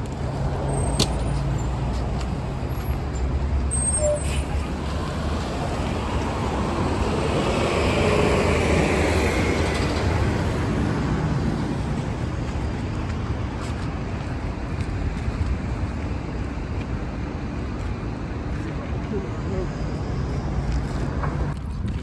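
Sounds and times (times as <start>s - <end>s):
street traffic noise: 0.0s - 22.0s
vehicle passing: 4.4s - 13.6s.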